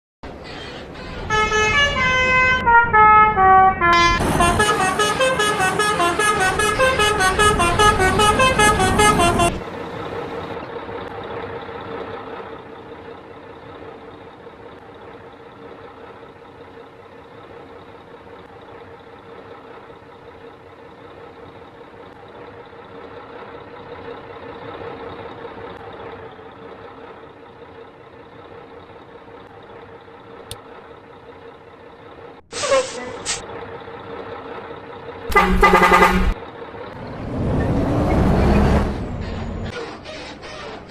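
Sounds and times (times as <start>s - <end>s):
bus horn playing a tune: 0.3s - 9.7s, 35.3s - 36.4s.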